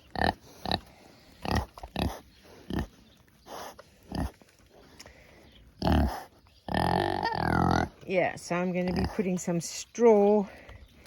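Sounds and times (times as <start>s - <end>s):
pigs grunting: 0.0s - 4.4s, 5.8s - 8.0s.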